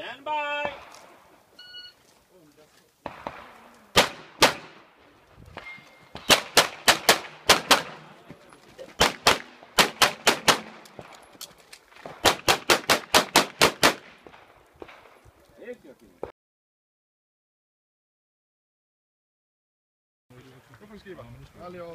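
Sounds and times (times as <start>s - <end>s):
pistol shots: 3.0s - 4.9s, 5.6s - 8.1s, 9.0s - 11.2s, 11.9s - 15.2s.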